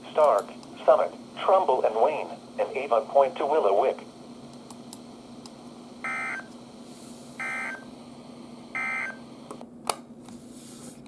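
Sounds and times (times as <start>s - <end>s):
radio hiss and hum: 0.0s - 5.4s.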